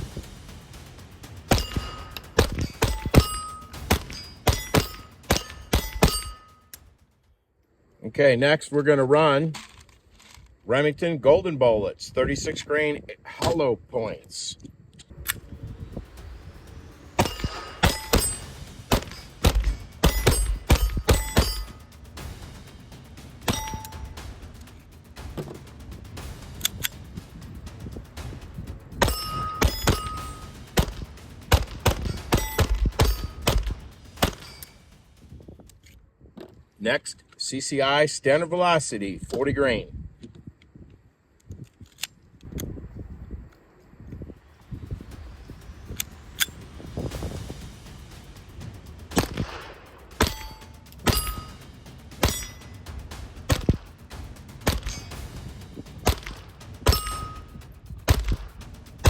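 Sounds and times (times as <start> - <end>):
steel plates ringing: 0.0 - 6.9, 16.1 - 22.5, 23.2 - 24.7, 28.8 - 35.3, 47.9 - 57.9
pistol shots: 17.2 - 21.7.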